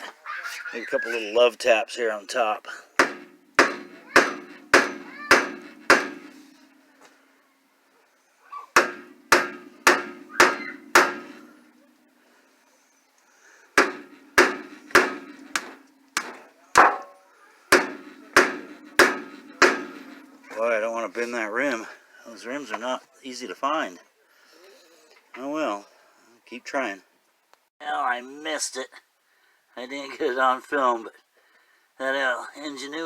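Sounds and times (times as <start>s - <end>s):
hammer blows on metal wheel: 3.0s - 6.7s, 8.8s - 11.6s, 13.8s - 20.4s.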